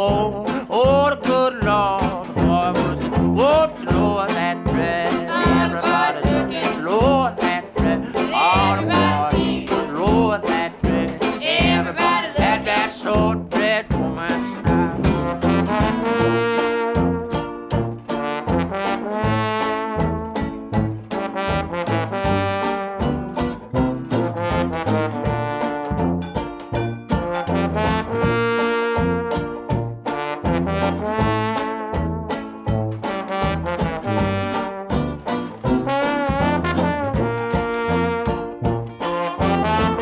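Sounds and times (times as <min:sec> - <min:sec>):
trombone: 0:00.0 - 0:40.0
tuba playing bass: 0:00.0 - 0:40.0
trumpet: 0:14.7 - 0:26.4, 0:27.2 - 0:40.0.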